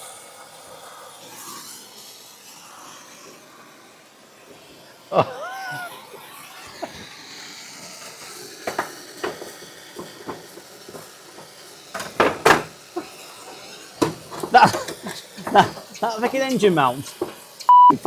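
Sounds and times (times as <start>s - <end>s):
faint hiss: 4.7s - 17.7s
hand tools knocking on metal: 12.0s - 12.8s, 14.0s - 17.4s.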